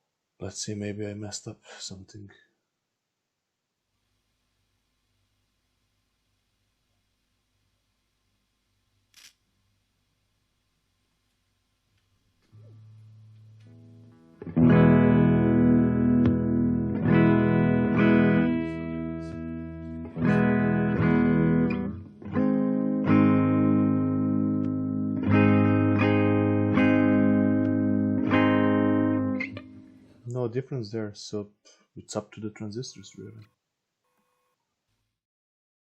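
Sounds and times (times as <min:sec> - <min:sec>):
electric guitar chords ringing: 0:12.6 - 0:30.2.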